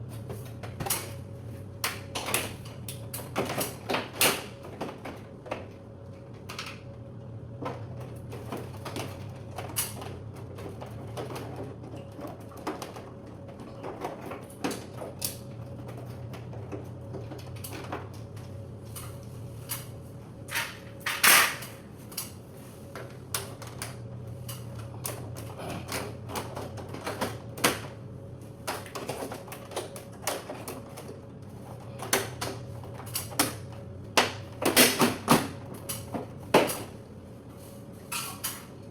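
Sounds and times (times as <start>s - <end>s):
steady low hum: 0.0s - 38.9s.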